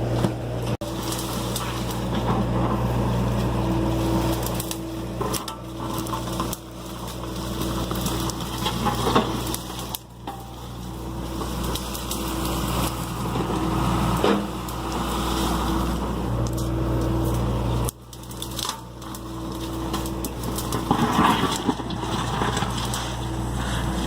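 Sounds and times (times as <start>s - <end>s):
excavator diesel engine running: 0.0s - 24.0s
knocks and crunching: 0.0s - 24.0s.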